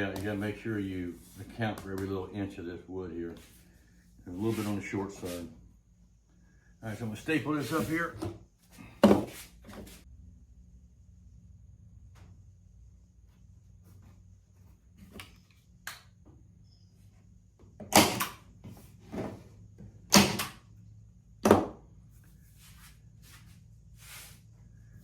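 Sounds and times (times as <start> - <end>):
staple gun shots into wood: 17.9 - 18.4, 20.1 - 20.6.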